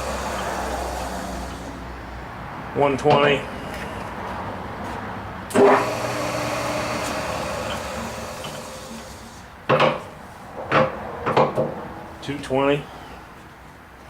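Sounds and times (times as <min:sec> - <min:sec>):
lathe gear hum: 0:00.0 - 0:02.5, 0:05.5 - 0:09.6.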